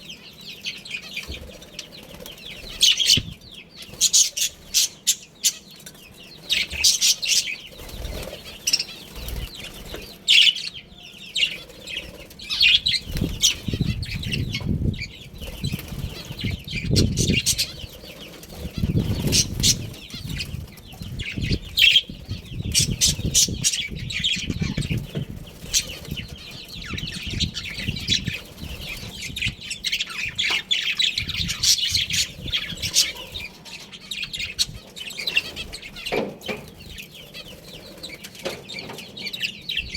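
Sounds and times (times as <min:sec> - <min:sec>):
budgerigars chirping: 0:00.0 - 0:39.9
wings flapping: 0:06.5 - 0:10.2, 0:11.5 - 0:29.5.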